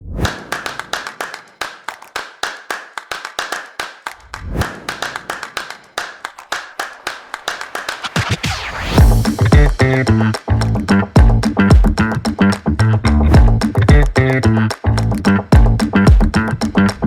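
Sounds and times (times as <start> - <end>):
sharp percussive hits: 0.1 - 2.2, 4.0 - 12.6
rising sweep: 7.4 - 10.5.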